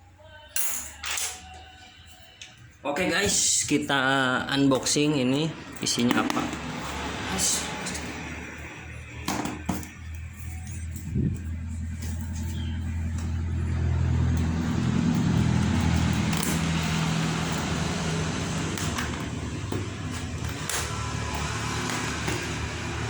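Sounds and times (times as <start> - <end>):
low engine hum: 9.9 - 23.0.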